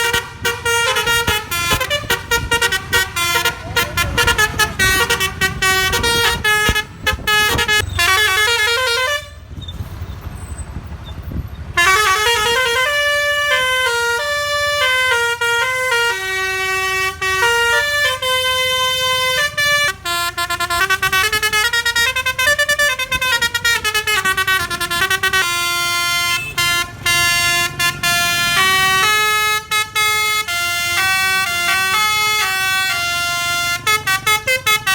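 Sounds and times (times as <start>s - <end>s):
musical air horn tune: 0.0s - 9.5s, 11.8s - 34.9s
noisy rumble: 0.0s - 10.2s.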